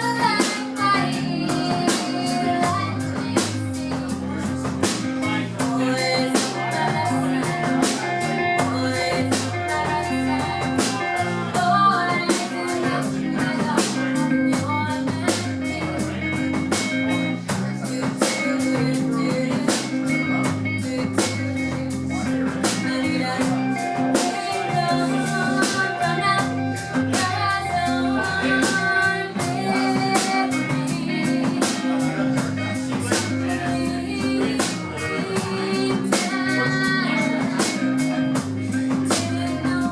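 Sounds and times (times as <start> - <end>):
bass guitar: 0.0 - 39.9
drum kit beat: 0.0 - 39.9
electric guitar: 0.0 - 39.9.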